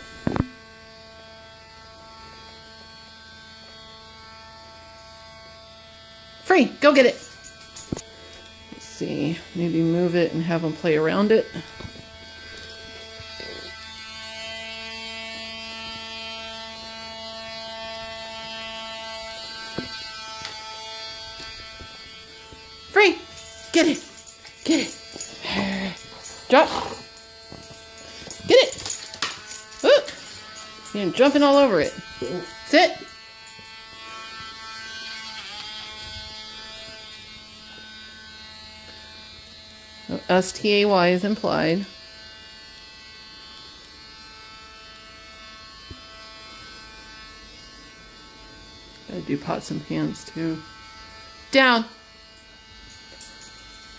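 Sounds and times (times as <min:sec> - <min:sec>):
rotary tool motor whine: 0:09.7 - 0:40.1.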